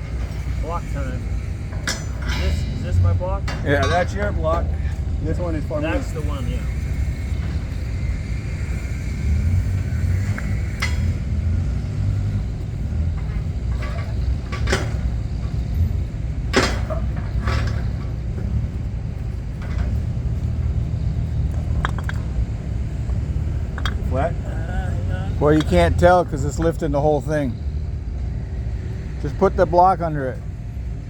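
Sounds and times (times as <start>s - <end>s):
engine rumbling: 0.0s - 31.0s
metal parts clanking: 0.1s - 7.7s, 13.1s - 15.8s, 16.5s - 18.6s, 21.4s - 24.4s, 25.3s - 27.4s.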